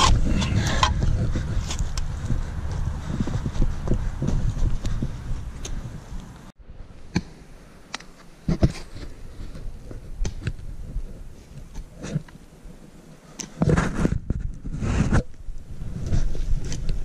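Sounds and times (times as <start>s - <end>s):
hand tool knocks and scrapes in earth: 8.0s - 9.1s.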